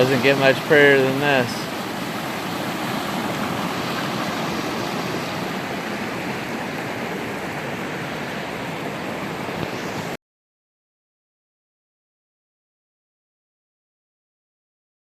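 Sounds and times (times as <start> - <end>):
waterfall rushing: 0.0 - 10.2.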